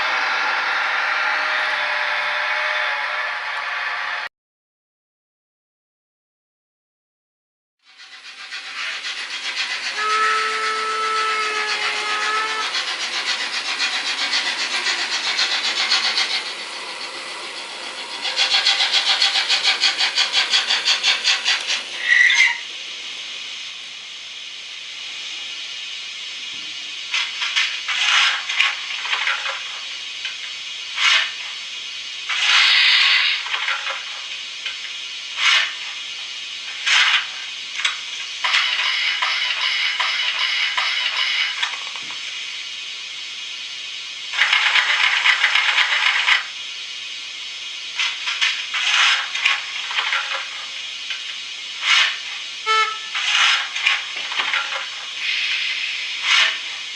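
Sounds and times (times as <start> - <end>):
fast chuffing: 7.9 - 22.1
hissing steam: 8.0 - 56.9
short squeal: 9.8 - 12.9, 22.0 - 22.7, 52.7 - 53.3
steam whistle: 9.8 - 12.9, 52.6 - 53.2.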